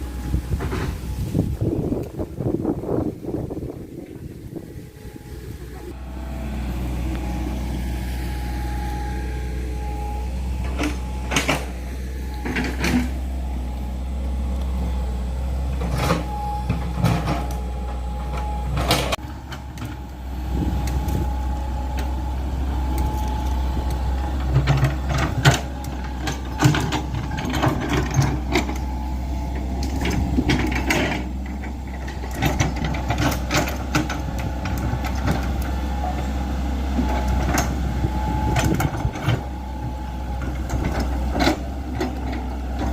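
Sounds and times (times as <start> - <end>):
excavator diesel engine rumbling: 0.0 - 42.9
excavator bucket clanking: 10.4 - 13.3, 15.8 - 20.0, 22.9 - 36.4, 37.0 - 42.9.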